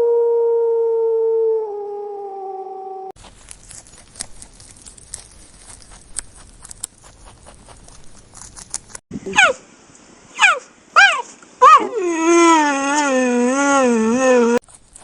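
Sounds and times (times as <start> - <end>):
dog howling: 0.0 - 3.2, 10.4 - 14.6.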